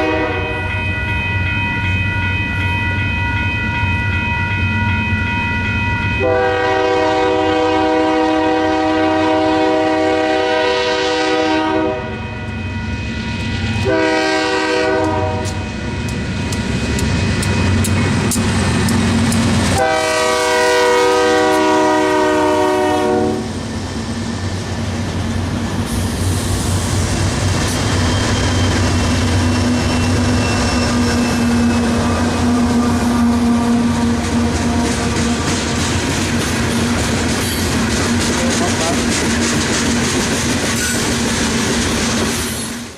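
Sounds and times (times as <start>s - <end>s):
locomotive horn blasts: 0.0s - 0.8s, 6.2s - 12.3s, 13.8s - 15.7s, 19.7s - 23.5s
train wheels clicking over rail joints: 15.0s - 19.9s, 23.6s - 42.9s.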